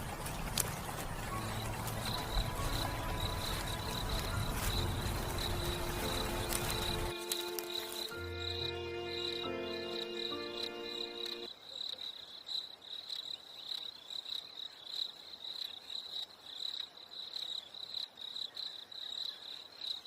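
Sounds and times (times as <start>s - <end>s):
music: 0.5s - 11.5s
crickets chirping: 1.2s - 20.0s.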